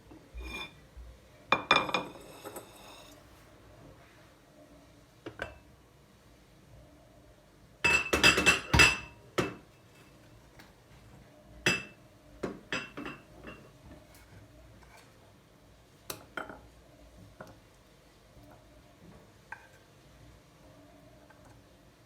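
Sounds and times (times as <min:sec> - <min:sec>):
glass and crockery clinking: 0:01.6 - 0:03.1, 0:07.8 - 0:09.6, 0:11.7 - 0:12.0, 0:12.7 - 0:13.6.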